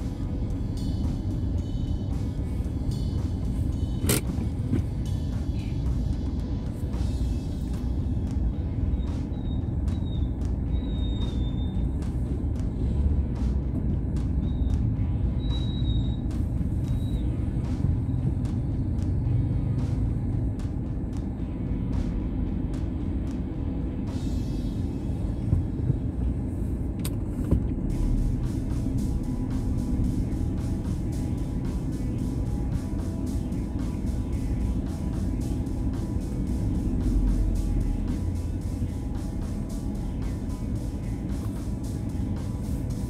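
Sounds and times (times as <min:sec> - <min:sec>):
car interior rumble: 0:00.0 - 0:43.0.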